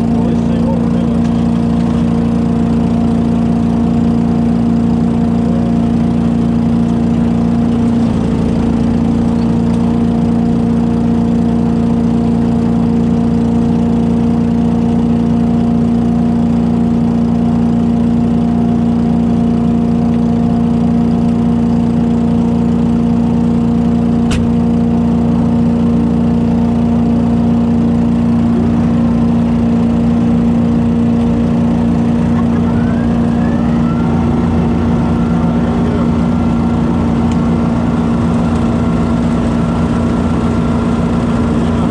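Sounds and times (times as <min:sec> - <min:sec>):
sharp click: 0:24.3 - 0:24.5
leaf vacuum engine humming: 0:27.6 - 0:41.9
faint rising whines: 0:30.7 - 0:41.9.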